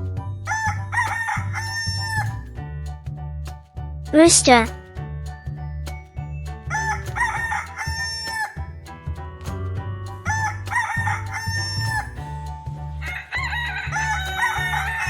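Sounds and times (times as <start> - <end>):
rooster crowing: 13.1 - 15.0.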